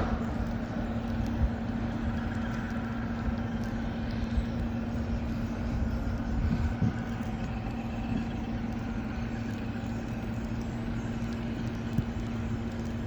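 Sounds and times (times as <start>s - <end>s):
vehicle engine idling: 0.0s - 13.0s.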